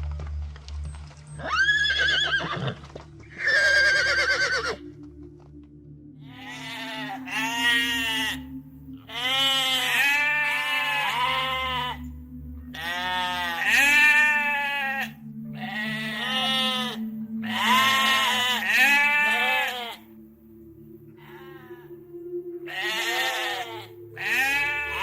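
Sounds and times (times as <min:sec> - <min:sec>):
sheep or goats bleating: 0:01.4 - 0:04.8, 0:06.3 - 0:08.4, 0:09.1 - 0:12.0, 0:12.7 - 0:20.0, 0:22.7 - 0:25.0.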